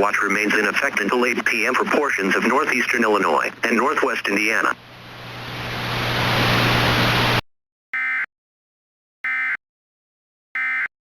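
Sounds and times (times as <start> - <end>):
radio static hiss: 0.0 - 7.4.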